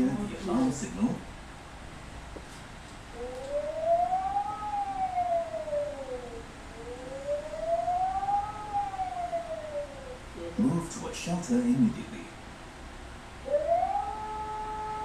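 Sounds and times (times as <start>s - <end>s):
wailing siren: 3.1s - 10.6s, 13.4s - 15.0s.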